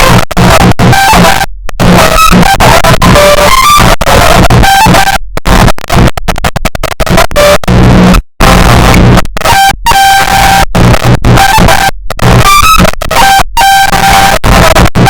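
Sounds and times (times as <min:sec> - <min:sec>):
heavily distorted arabic-style music: 0:00.0 - 0:15.0.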